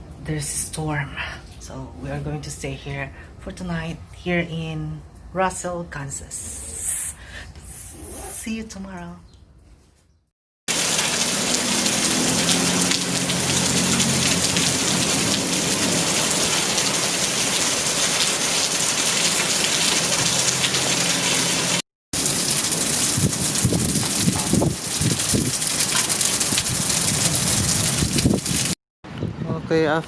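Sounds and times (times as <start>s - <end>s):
heavy rain pouring: 10.7s - 28.8s.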